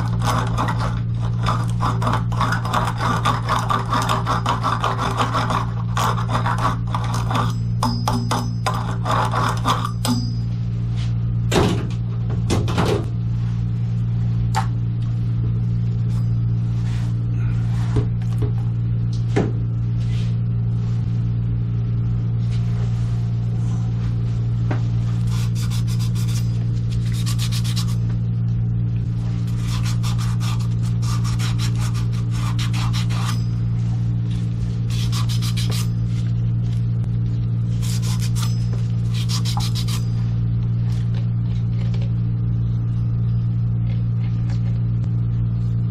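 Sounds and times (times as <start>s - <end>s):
rasping scraping strokes: 0.0s - 7.6s, 8.7s - 10.0s, 25.2s - 28.1s, 29.2s - 34.0s, 34.9s - 36.2s, 37.7s - 40.2s
steady low hum: 0.0s - 45.9s.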